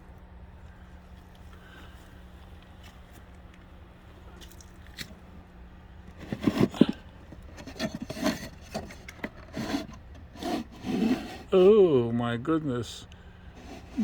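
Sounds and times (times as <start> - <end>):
wooden scraping and rubbing: 6.1 - 11.8, 13.6 - 14.0.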